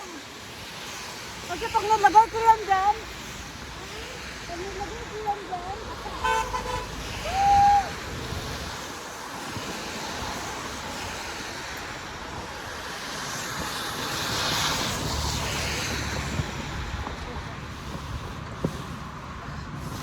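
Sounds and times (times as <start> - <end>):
car horn toot: 6.2 - 6.9.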